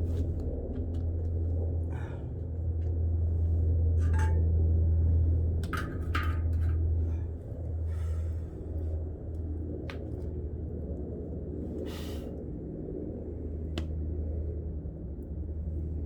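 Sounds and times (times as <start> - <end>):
low rumble of fire: 0.0 - 16.0
metal pot lid clinks and scrapes: 4.0 - 4.5, 5.6 - 6.8.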